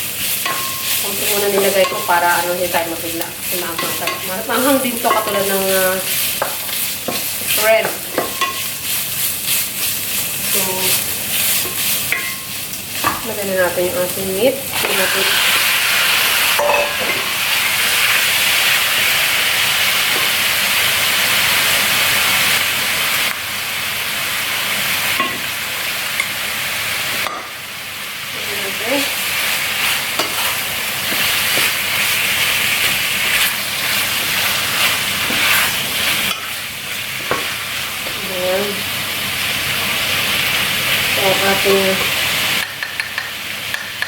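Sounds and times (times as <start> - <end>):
chicken sizzling in hot oil: 0.0 - 44.0
spatula scraping a pan: 29.8 - 36.5.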